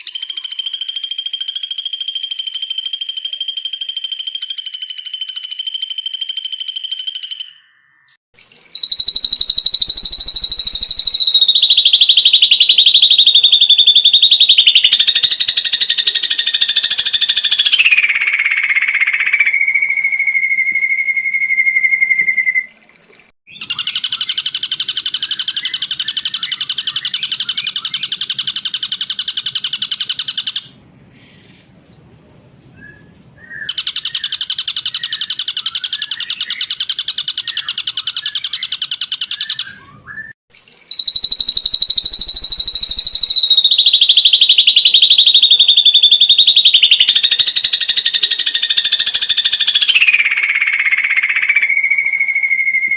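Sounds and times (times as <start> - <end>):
bird singing: 0.0 - 22.7, 23.5 - 32.1, 32.8 - 52.9.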